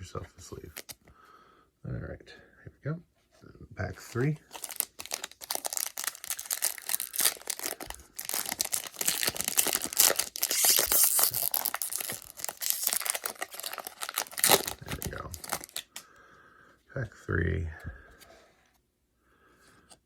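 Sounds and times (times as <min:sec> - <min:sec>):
card pack wrapper tearing and crinkling: 0:00.7 - 0:01.0, 0:04.0 - 0:16.0.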